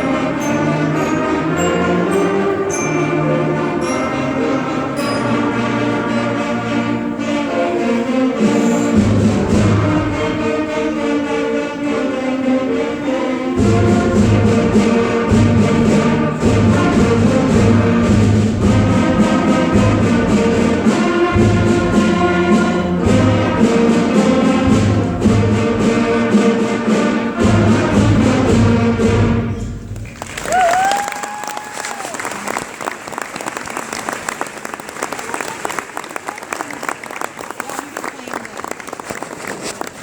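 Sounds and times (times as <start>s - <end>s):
choir singing: 0.0s - 8.9s
orchestral music: 0.0s - 37.2s.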